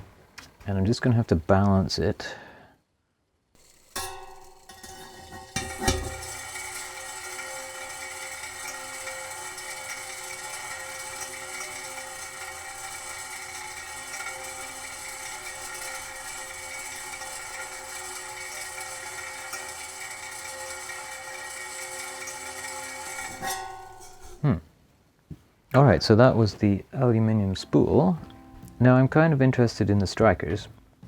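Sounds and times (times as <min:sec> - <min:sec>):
clockwork mechanism running: 0:03.6 - 0:24.4
metal spool ringing: 0:03.6 - 0:24.5.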